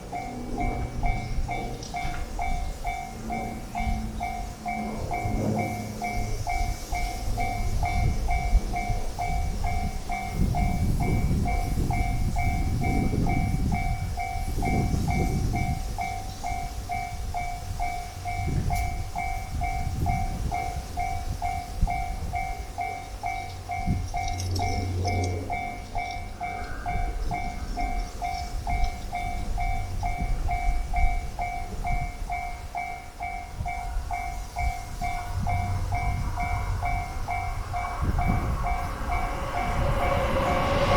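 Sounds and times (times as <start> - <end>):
railway crossing bell ringing: 0.0 - 40.9
train rumbling past: 0.0 - 40.9.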